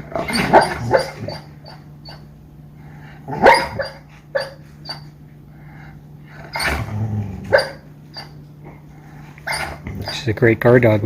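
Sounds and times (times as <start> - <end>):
dog barking in sleep: 0.2 - 1.8, 3.3 - 5.0, 6.5 - 8.3.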